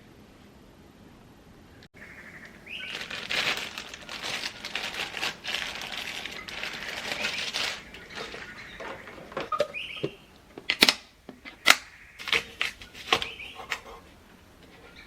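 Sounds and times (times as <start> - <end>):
plastic packaging crinkling: 2.4 - 10.9, 12.2 - 13.9.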